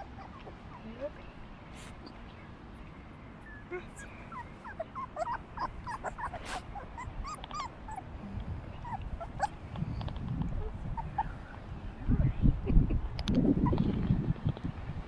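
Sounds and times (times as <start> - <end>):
puppy whimpering: 0.0 - 1.1, 3.4 - 8.2, 8.8 - 9.7, 10.6 - 11.5.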